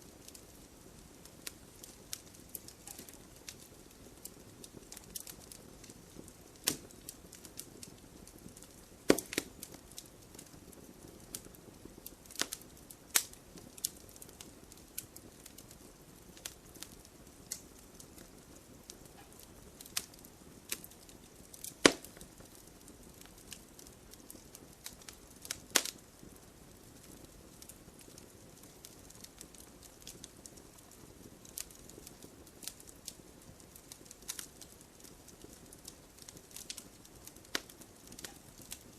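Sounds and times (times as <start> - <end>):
campfire crackling and popping: 0.0 - 38.9
soft fire hiss: 0.0 - 38.9.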